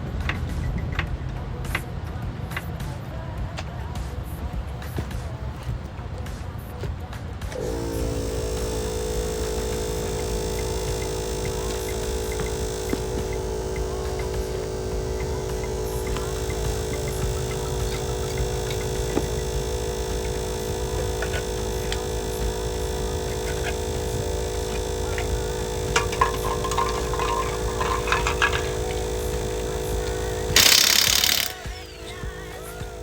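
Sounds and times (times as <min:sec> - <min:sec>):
air compressor running: 0:00.0 - 0:33.0
loud burst of noise: 0:07.6 - 0:33.0.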